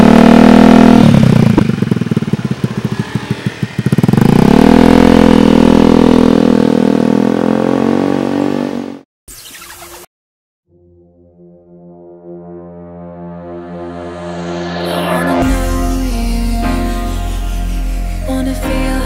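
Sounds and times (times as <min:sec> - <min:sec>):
scooter engine revving and idling: 0:00.0 - 0:09.0.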